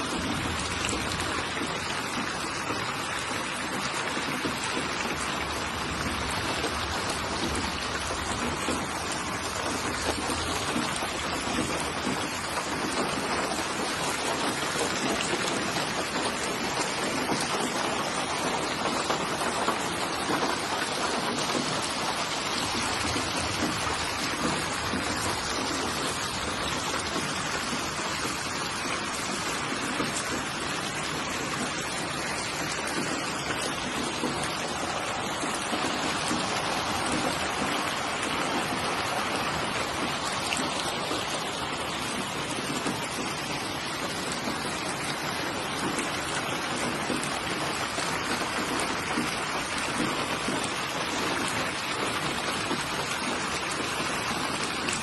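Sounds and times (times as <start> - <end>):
steady rain falling: 0.0 - 55.0.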